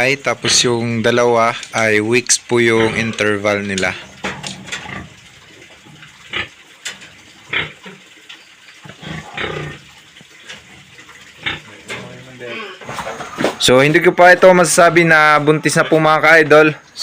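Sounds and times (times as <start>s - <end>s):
pigs grunting and snorting: 2.6s - 13.6s
pig calls: 8.8s - 10.0s, 10.7s - 13.6s.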